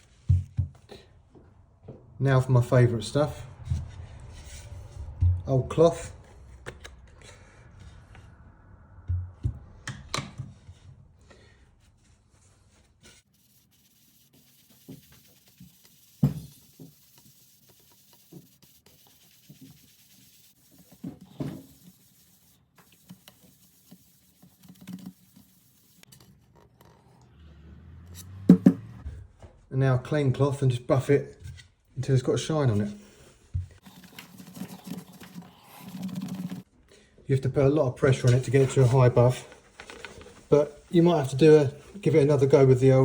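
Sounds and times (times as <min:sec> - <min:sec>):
cloth rubbing on drum shell: 0:12.7 - 0:26.3, 0:33.8 - 0:36.7.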